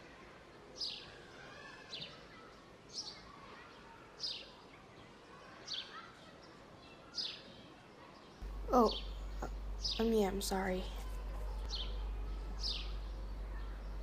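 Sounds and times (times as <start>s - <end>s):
faint background noise: 0.0s - 14.0s
bird chirping: 8.4s - 14.0s.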